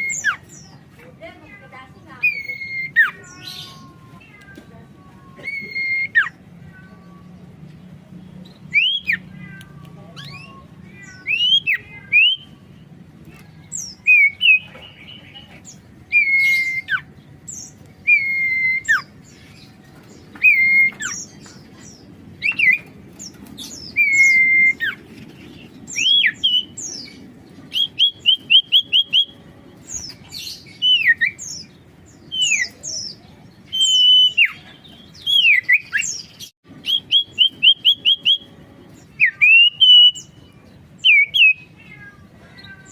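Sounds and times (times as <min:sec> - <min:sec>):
bird singing whistled notes: 0:08.5 - 0:09.3, 0:10.2 - 0:12.6, 0:13.8 - 0:14.7, 0:16.1 - 0:19.1, 0:23.6 - 0:25.0, 0:25.9 - 0:29.4, 0:30.5 - 0:40.4, 0:41.0 - 0:41.8.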